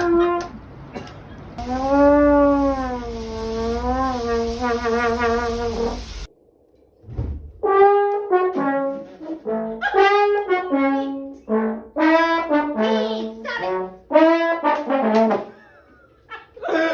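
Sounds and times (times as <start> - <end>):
brass instrument melody: 1.6 - 6.3, 7.6 - 15.5.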